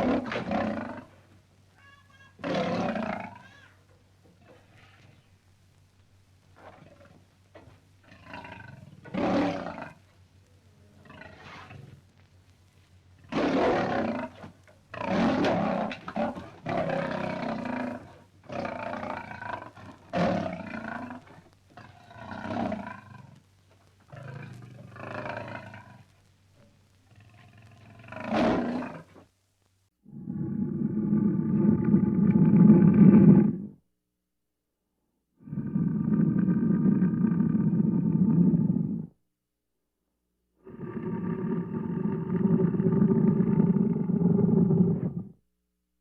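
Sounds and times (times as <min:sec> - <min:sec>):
lion roaring: 0:00.0 - 0:01.2, 0:02.4 - 0:03.6, 0:06.6 - 0:10.0, 0:10.9 - 0:12.0, 0:13.2 - 0:23.4, 0:24.1 - 0:26.1, 0:27.1 - 0:29.2, 0:30.1 - 0:33.8, 0:35.4 - 0:39.1, 0:40.6 - 0:45.4.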